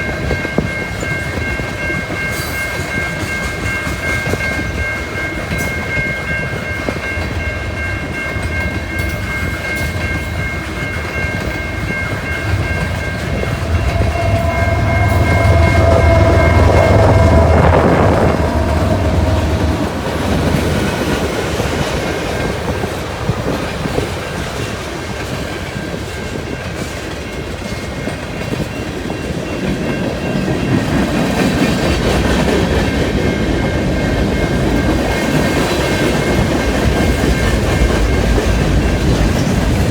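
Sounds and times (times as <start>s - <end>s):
high steady ringing tones: 0.0s - 31.4s
freight train cars rumbling: 0.0s - 39.9s.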